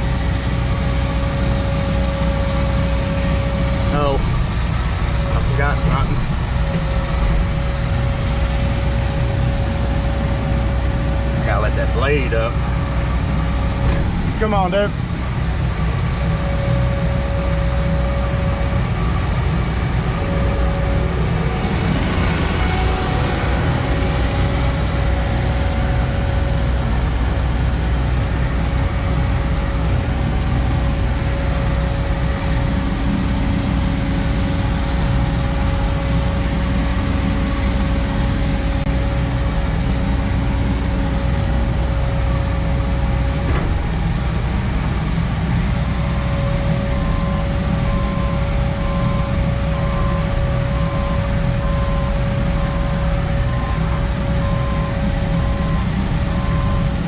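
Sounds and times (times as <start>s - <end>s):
diesel engine running: 0.0s - 57.0s
engine whine: 0.0s - 57.0s
rapid pulsing beep: 46.2s - 57.0s.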